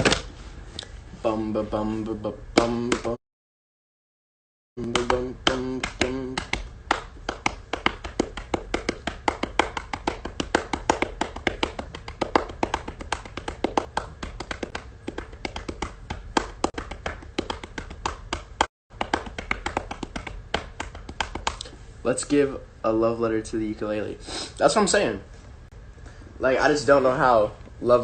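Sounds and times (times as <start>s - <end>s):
rhythmic tapping: 2.6s - 3.2s, 4.8s - 21.7s.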